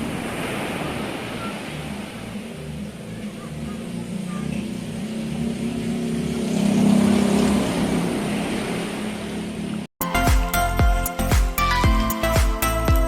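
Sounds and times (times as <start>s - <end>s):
engine running: 0.0s - 9.9s
music with a beat: 10.0s - 13.0s.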